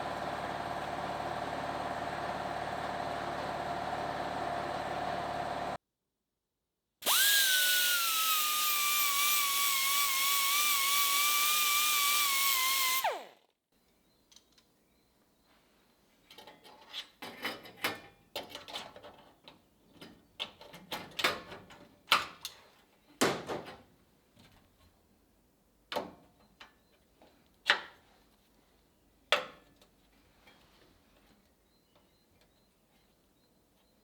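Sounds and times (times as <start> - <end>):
hand tools and metal parts clattering: 16.2 - 22.8.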